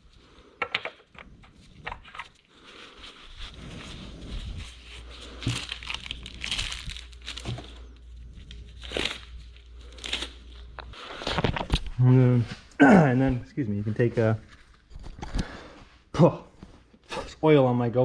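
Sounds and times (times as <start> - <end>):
crinkling handling sounds: 1.2 - 12.0.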